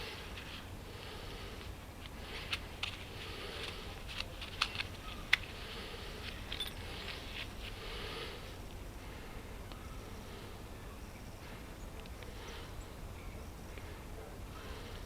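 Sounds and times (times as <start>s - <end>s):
light scraping and handling noise: 0.0s - 8.8s.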